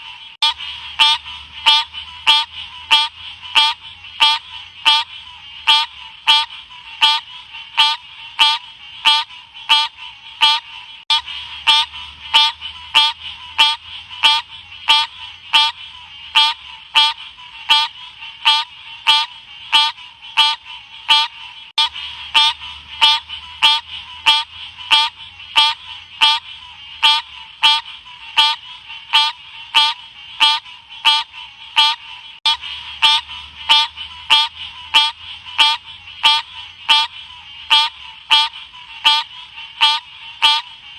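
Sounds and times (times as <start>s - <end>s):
frog calling: 0.0s - 40.9s.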